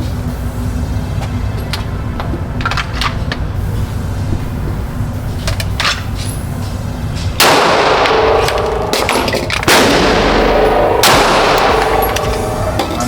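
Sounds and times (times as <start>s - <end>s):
pistol shots ringing out: 7.4s - 12.8s.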